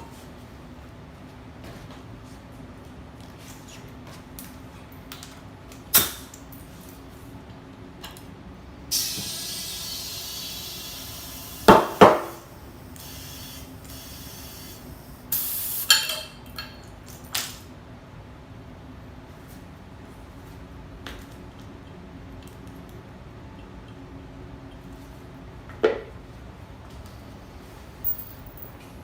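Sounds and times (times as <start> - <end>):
compressed air hissing: 8.9 - 15.9.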